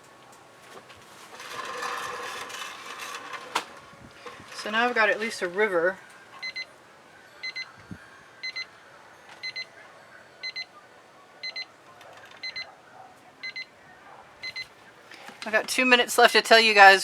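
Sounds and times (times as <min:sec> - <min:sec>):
timer alarm beeping: 0:06.4 - 0:06.7, 0:07.4 - 0:08.8, 0:09.4 - 0:09.8, 0:10.4 - 0:10.8, 0:11.4 - 0:11.7, 0:12.4 - 0:12.7, 0:13.4 - 0:13.7, 0:14.4 - 0:14.7.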